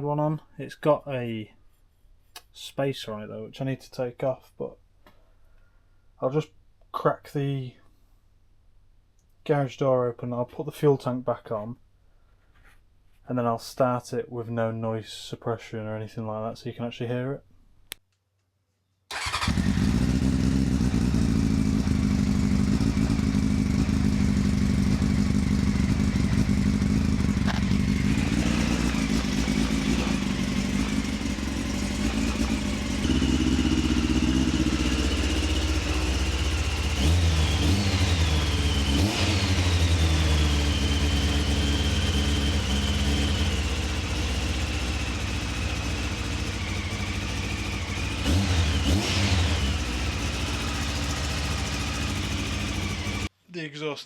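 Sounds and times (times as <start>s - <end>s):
motorcycle engine revving: 19.1s - 53.3s.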